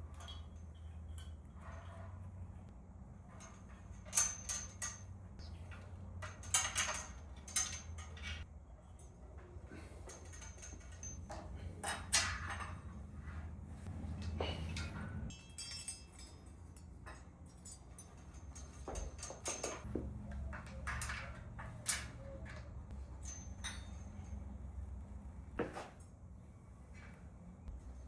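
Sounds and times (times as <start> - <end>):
metal gym hardware clinking: 0.0 - 26.2
steady low hum: 0.0 - 28.0.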